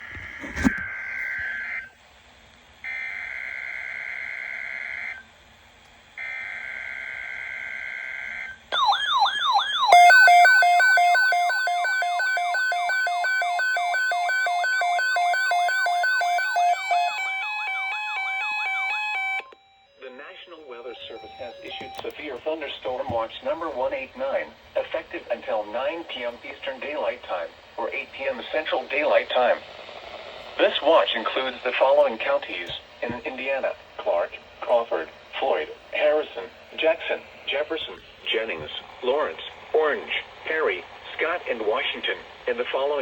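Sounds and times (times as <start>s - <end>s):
electronic alert alarm: 8.7s - 23.2s.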